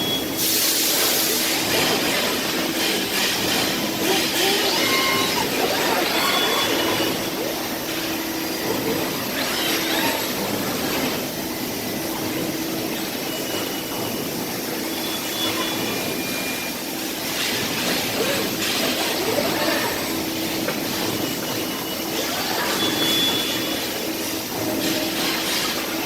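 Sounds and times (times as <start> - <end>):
machinery hum and hiss: 0.0 - 26.0.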